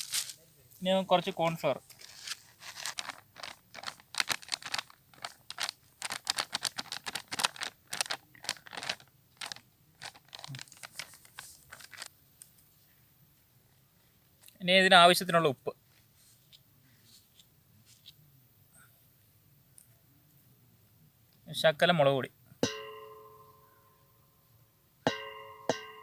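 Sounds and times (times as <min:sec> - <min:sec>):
plastic packet crinkling: 0:00.0 - 0:00.4, 0:01.9 - 0:12.5.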